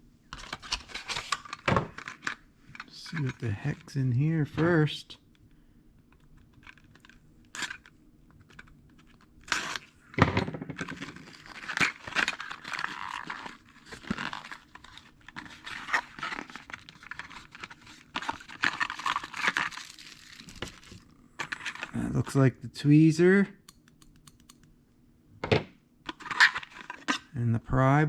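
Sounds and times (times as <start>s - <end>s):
packaging rustling and crinkling: 10.8s - 21.9s.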